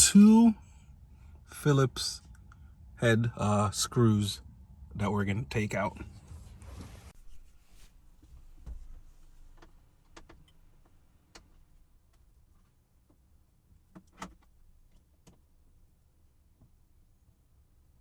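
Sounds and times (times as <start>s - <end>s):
faint clicks and taps: 8.2s - 13.3s.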